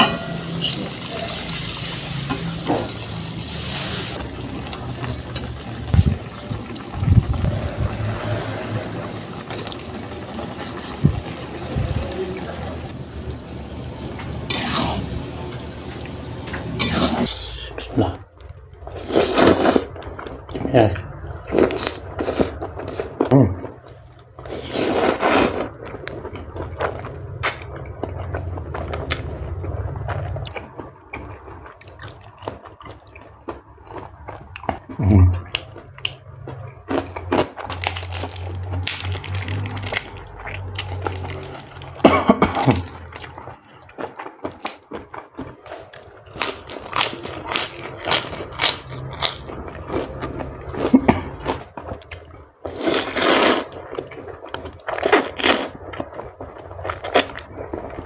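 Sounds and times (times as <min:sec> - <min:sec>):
slurping noodles in broth: 0:14.5 - 0:15.2, 0:16.8 - 0:18.0, 0:18.9 - 0:19.9, 0:21.5 - 0:23.2, 0:24.4 - 0:25.7, 0:52.7 - 0:53.8
chewing with wet smacks: 0:25.8 - 0:52.8.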